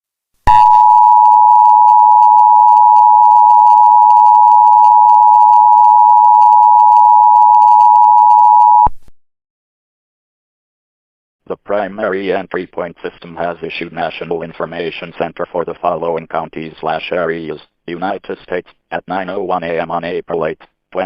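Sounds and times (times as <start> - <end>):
two-tone alert alarm: 0.5 - 8.9.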